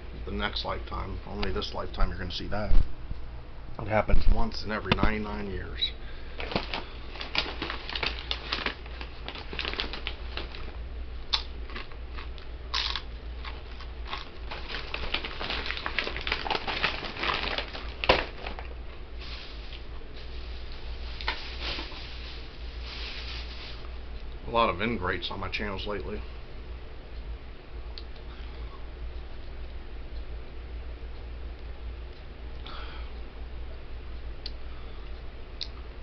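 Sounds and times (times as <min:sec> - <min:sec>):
steady low hum: 0:00.0 - 0:36.0
crinkling handling noises: 0:06.3 - 0:10.8, 0:11.7 - 0:23.9.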